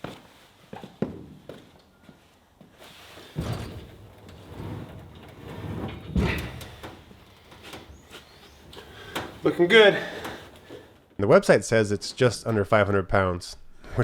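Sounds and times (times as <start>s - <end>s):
steel tool chest scraping: 3.1s - 11.0s
heavy thud: 3.4s - 7.3s.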